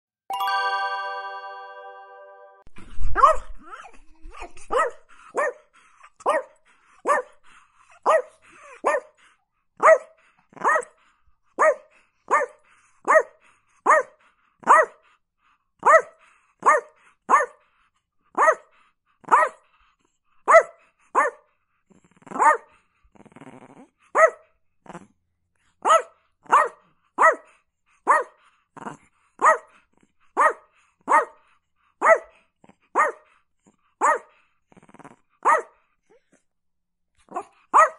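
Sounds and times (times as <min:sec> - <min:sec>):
small dog barking: 0:03.2 - 0:03.9, 0:04.6 - 0:07.4, 0:08.0 - 0:09.2, 0:09.8 - 0:11.0, 0:11.6 - 0:15.0, 0:15.8 - 0:17.6, 0:18.4 - 0:19.6, 0:20.5 - 0:21.4, 0:22.3 - 0:22.7, 0:24.2 - 0:24.4, 0:25.8 - 0:28.4, 0:29.4 - 0:29.8, 0:30.4 - 0:31.4, 0:32.0 - 0:32.3, 0:32.9 - 0:33.3, 0:34.0 - 0:34.3, 0:35.4 - 0:35.8, 0:37.3 - 0:37.9.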